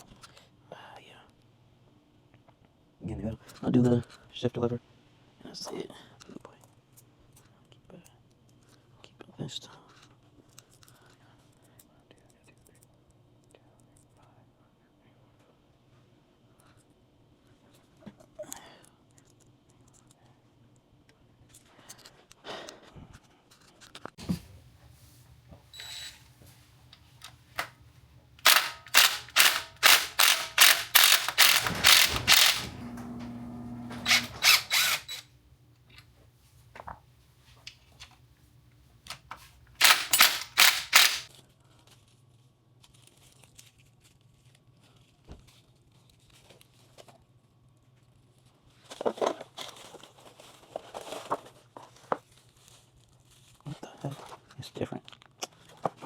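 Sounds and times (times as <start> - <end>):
steady hum: 24.5 - 35.6
sharp mechanical clacks: 28.4 - 35.3, 39.8 - 41.3.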